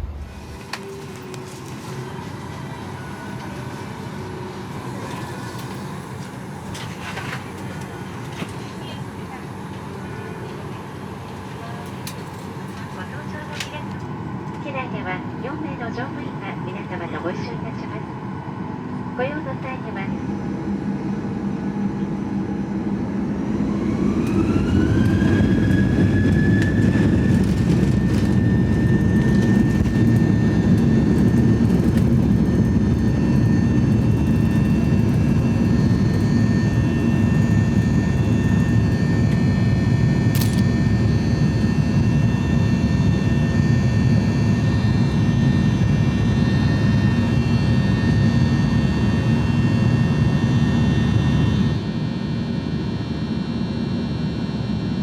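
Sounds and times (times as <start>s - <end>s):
jet engines spooling up: 21.2s - 51.8s.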